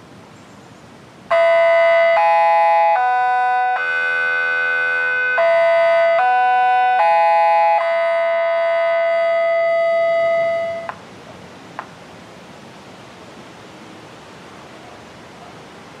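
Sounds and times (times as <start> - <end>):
electronic siren tone: 1.3 - 10.9
outdoor hiss: 8.2 - 16.0.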